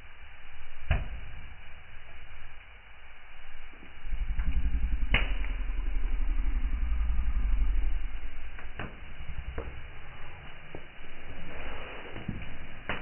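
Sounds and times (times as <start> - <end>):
wood fire burning: 0.0 - 13.0
sharp crackling pop: 4.4 - 5.8.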